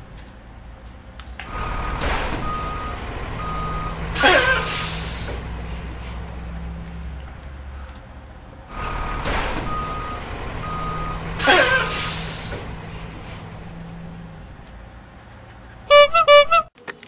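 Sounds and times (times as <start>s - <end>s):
vehicle engine running: 0.0s - 16.6s
reversing alarm beeps: 2.4s - 4.7s, 8.8s - 11.9s
loud air hiss: 3.8s - 6.2s, 8.8s - 13.6s.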